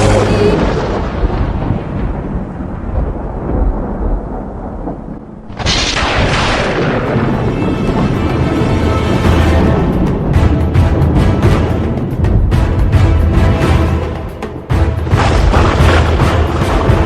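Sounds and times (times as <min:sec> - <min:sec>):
low rumbling thunder: 0:00.0 - 0:12.8, 0:15.0 - 0:17.0
loud crack of thunder: 0:00.6 - 0:08.7, 0:15.0 - 0:17.0.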